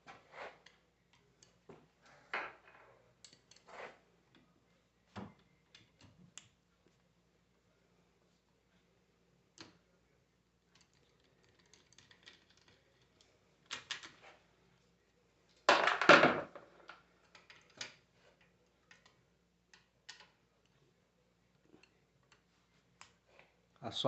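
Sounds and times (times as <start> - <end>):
metal tools clicking and knocking: 3.2 - 3.7, 10.7 - 14.2.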